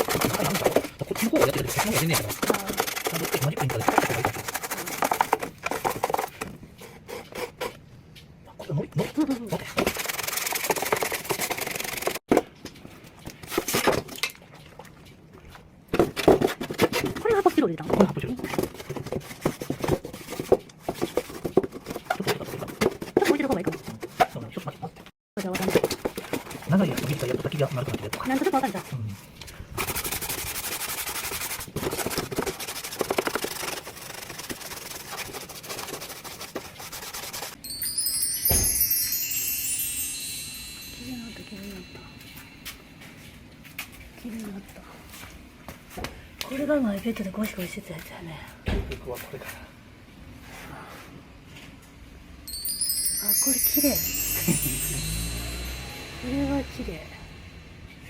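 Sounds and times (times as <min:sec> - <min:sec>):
fast scrubbing: 0:00.0 - 0:07.7, 0:09.5 - 0:12.2, 0:29.8 - 0:37.6
rubbing and handling noises: 0:00.0 - 0:07.9, 0:09.5 - 0:12.2, 0:16.0 - 0:44.1.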